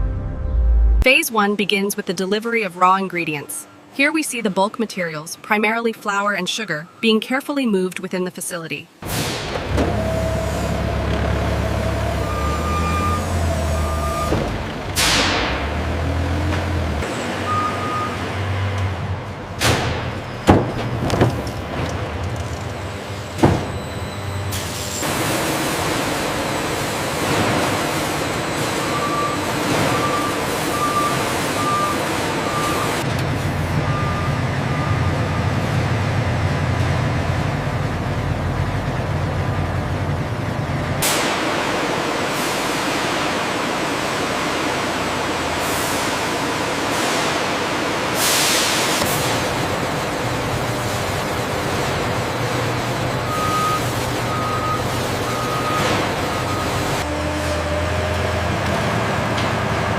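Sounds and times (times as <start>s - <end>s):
vehicle engine rumbling: 0.0s - 1.1s, 9.6s - 31.0s, 31.6s - 48.0s
reversing beep: 12.2s - 14.4s, 17.4s - 18.3s, 23.6s - 24.5s, 28.5s - 33.0s, 33.8s - 35.6s, 53.2s - 56.9s.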